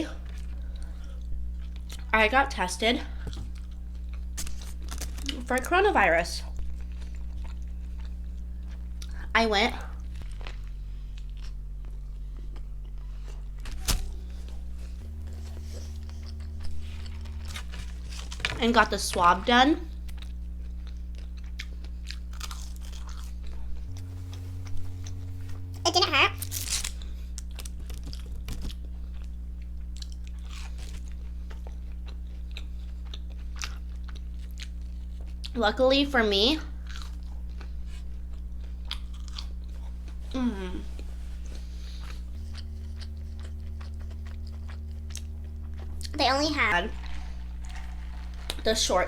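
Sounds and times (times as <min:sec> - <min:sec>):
steady low hum: 0:00.0 - 0:49.0
chewing and biting: 0:03.2 - 0:05.5, 0:10.0 - 0:18.5, 0:20.0 - 0:25.6, 0:26.4 - 0:35.6, 0:36.8 - 0:40.3, 0:41.0 - 0:49.0
crisp crunches of fried food: 0:03.2 - 0:05.8, 0:10.0 - 0:18.7, 0:20.0 - 0:35.6, 0:36.8 - 0:40.4, 0:41.0 - 0:49.0
chewing with wet mouth clicks: 0:27.4 - 0:35.6, 0:38.3 - 0:39.9, 0:42.0 - 0:46.2.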